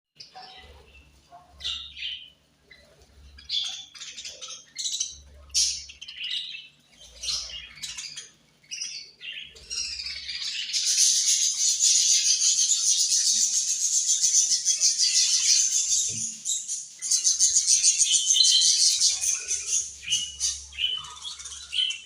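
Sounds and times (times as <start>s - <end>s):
budgerigars chirping: 0.2s - 22.0s.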